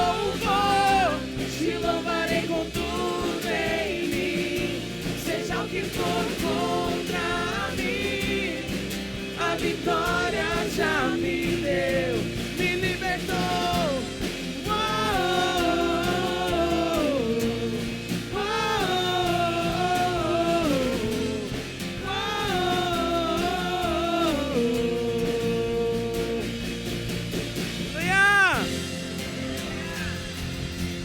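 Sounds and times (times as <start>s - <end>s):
wordless held singing: 0.0s - 30.6s
live worship band music: 0.0s - 31.0s.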